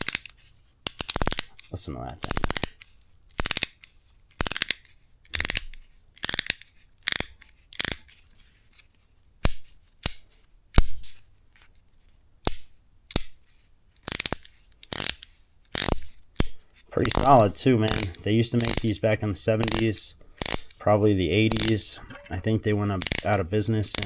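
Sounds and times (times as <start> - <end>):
ratchet wrench clicking: 0.9 - 1.5, 3.4 - 3.8, 4.4 - 8.0, 14.0 - 19.0, 19.6 - 20.8, 21.5 - 21.9, 23.0 - 23.3.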